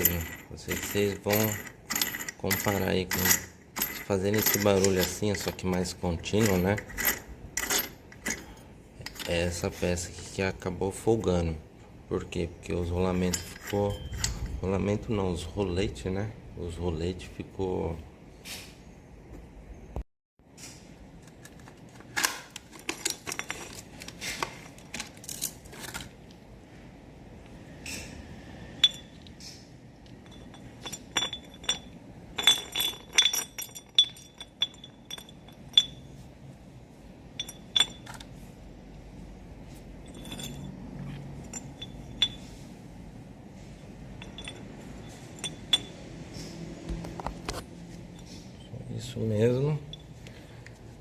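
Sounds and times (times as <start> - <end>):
metal parts clinking and scraping: 0.0 - 10.6, 12.7 - 15.5, 21.2 - 26.4, 28.8 - 36.3, 37.3 - 38.5, 39.7 - 42.7, 43.6 - 50.8.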